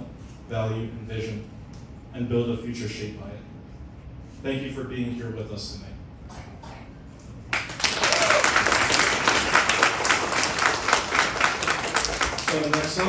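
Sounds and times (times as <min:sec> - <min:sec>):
audience applause: 0:07.5 - 0:13.0.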